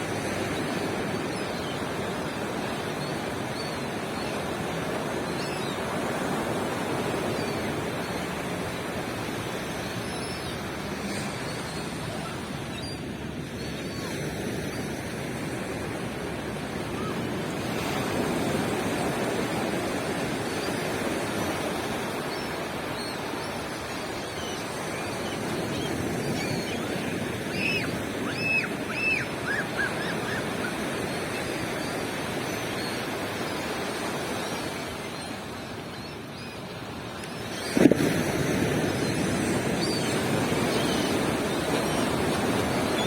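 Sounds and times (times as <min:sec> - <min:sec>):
ocean surf washing on beach: 0:00.0 - 0:43.0
bird calling: 0:24.4 - 0:33.0.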